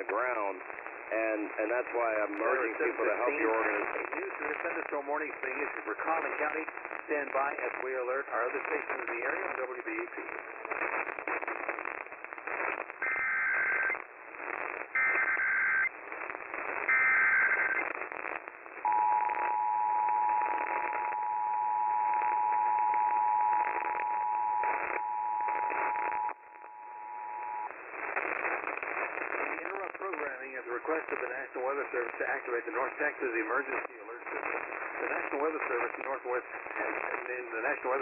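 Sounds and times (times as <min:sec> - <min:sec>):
radio static: 0:00.0 - 0:38.0
data tone bursts: 0:16.8 - 0:17.8.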